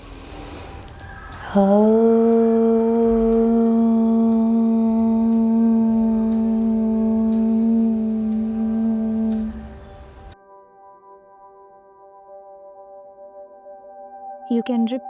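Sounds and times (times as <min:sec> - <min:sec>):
woman chanting om: 0:00.0 - 0:10.4.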